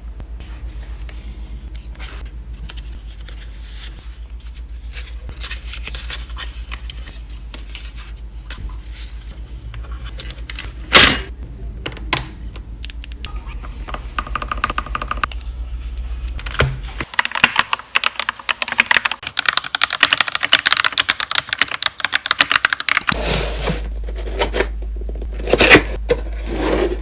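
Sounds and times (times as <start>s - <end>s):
steady low hum: 0.0s - 17.1s, 23.1s - 27.0s.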